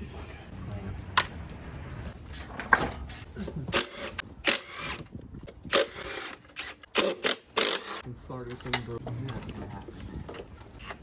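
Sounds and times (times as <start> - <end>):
bursts of tool noise: 3.1 - 5.0, 5.7 - 8.0.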